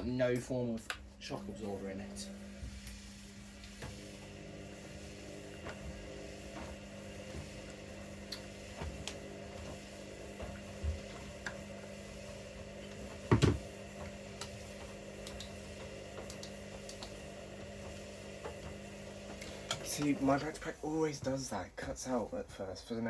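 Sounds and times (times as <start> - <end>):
washing machines humming: 0.0 - 23.0
washing machine thump: 8.6 - 11.4, 12.2 - 15.0.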